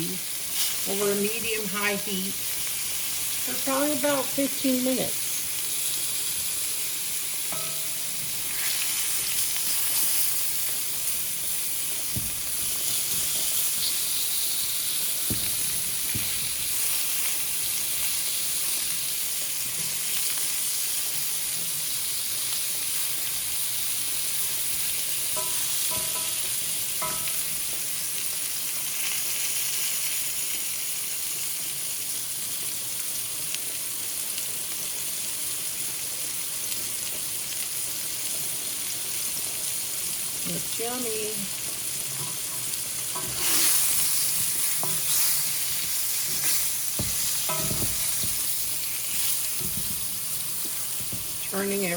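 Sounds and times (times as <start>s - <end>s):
beets sizzling in a frying pan: 0.0s - 51.9s.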